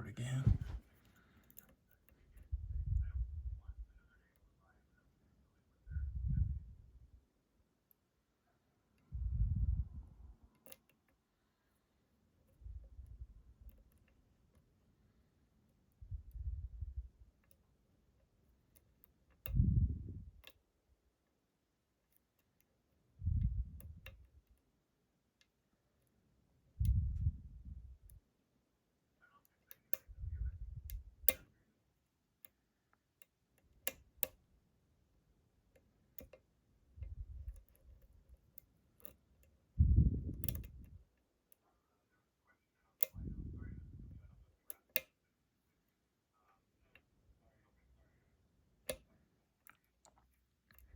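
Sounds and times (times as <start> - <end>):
lock pick clicking: 35.7 - 36.4, 40.3 - 41.0.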